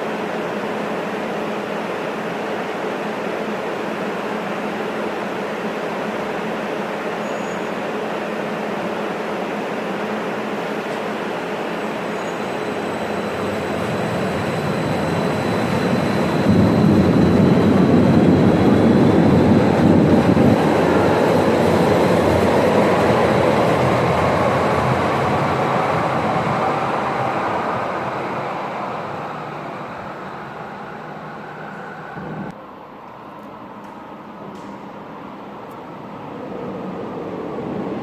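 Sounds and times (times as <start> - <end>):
light-rail train rumbling by: 0.0 - 38.0
faint gliding whine: 9.8 - 33.0.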